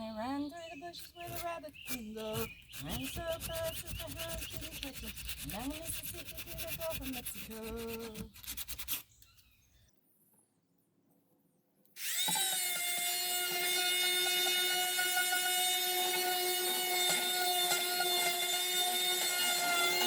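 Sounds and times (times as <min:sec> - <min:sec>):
power sander motor whine: 0:12.0 - 0:20.0.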